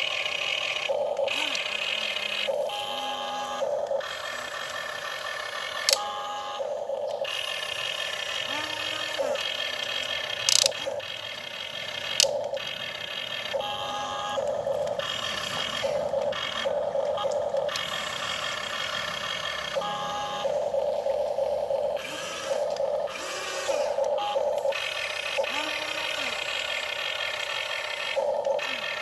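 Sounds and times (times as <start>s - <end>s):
small electric motors whining: 0.0s - 29.0s
sharp clicks: 5.7s - 6.1s, 10.0s - 12.8s.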